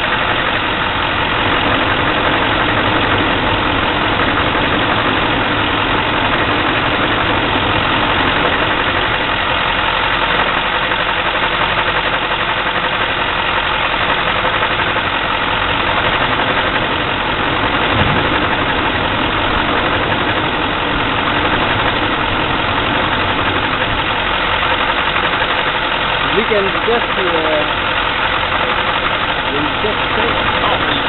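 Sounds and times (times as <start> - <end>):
diesel engine idling: 0.0 - 31.0.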